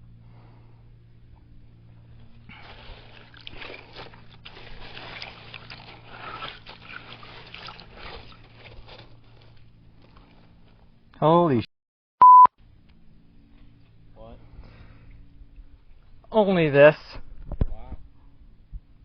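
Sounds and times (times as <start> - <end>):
gravel and sand rattling in sifter: 2.1 - 11.0.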